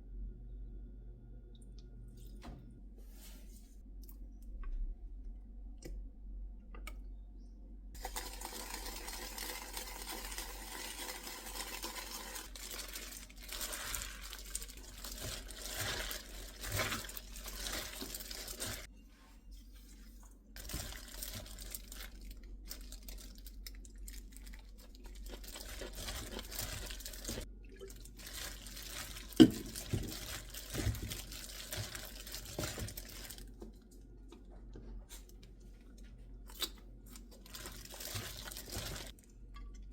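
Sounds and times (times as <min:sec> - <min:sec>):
food packaging crinkling and tearing: 0:08.1 - 0:18.9, 0:20.6 - 0:33.6, 0:36.5 - 0:39.2.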